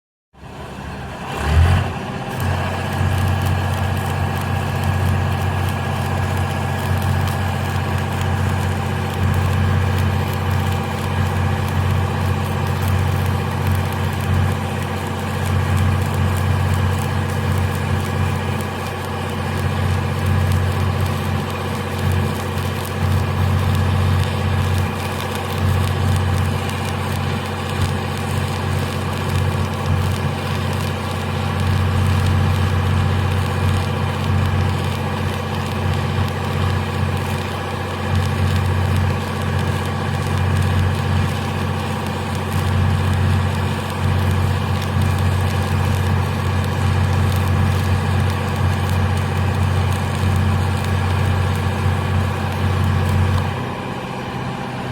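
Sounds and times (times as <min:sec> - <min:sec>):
welding arc crackling: 0:01.4 - 0:54.9
low hum: 0:01.9 - 0:54.9.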